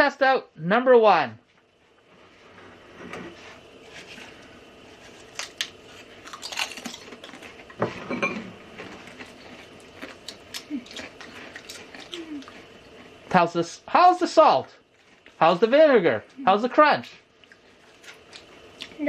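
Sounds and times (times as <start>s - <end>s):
potato chips crunching: 5.1s - 7.8s, 8.7s - 13.4s, 17.0s - 19.0s.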